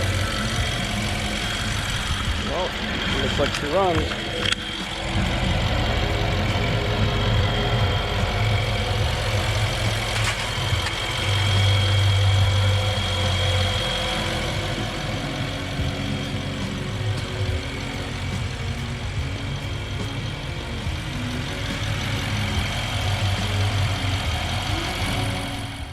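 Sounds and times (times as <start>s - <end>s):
car engine idling: 0.0s - 25.9s.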